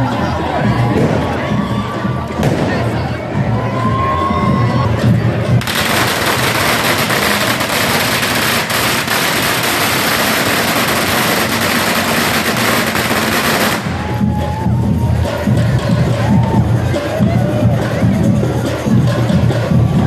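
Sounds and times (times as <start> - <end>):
firecrackers crackling: 2.3 - 3.2, 5.6 - 14.6.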